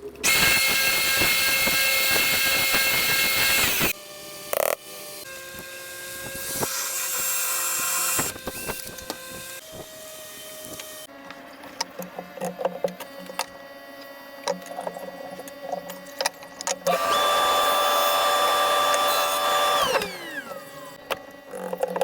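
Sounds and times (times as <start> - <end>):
power tool motor whining: 0.2 - 22.0
tools and wood knocking: 21.0 - 22.0.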